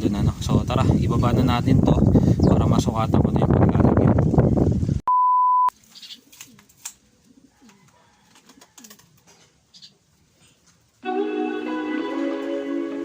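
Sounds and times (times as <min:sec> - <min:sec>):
electronic beep: 0:05.1 - 0:05.7
pigeons cooing softly: 0:05.8 - 0:10.7
guitar music: 0:11.0 - 0:13.0.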